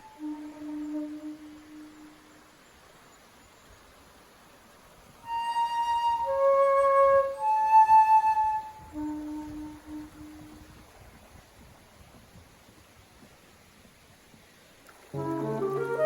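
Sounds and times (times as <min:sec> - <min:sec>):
slow flute melody: 0:00.0 - 0:02.4, 0:05.2 - 0:10.5, 0:15.1 - 0:16.0.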